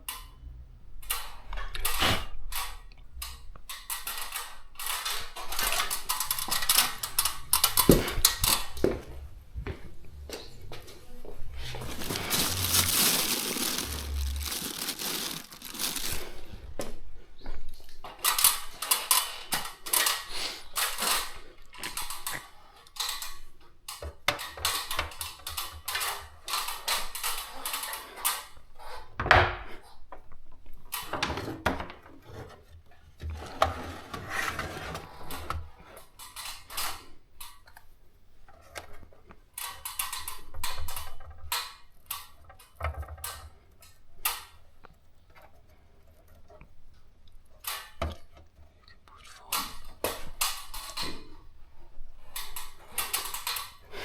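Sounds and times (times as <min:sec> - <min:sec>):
small hard objects clicking and scraping: 0:11.6 - 0:16.6.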